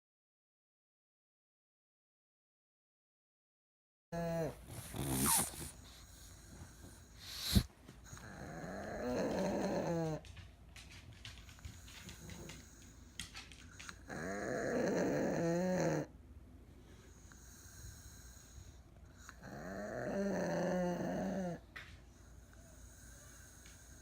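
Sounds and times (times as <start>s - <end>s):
dog snoring: 4.2s - 10.4s, 11.7s - 16.1s, 17.1s - 24.0s
quiet dog breathing: 4.2s - 24.0s.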